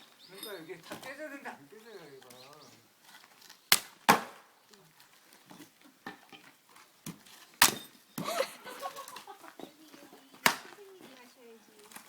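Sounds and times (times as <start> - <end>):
axe chopping log: 3.7 - 4.5, 7.1 - 8.0, 10.4 - 10.8.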